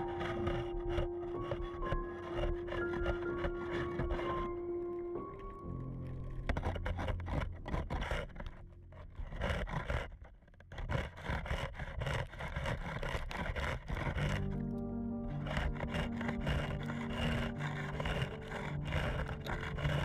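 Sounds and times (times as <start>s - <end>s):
faint background music: 0.0s - 9.4s, 14.2s - 20.0s
scraping boat hull: 0.0s - 20.0s.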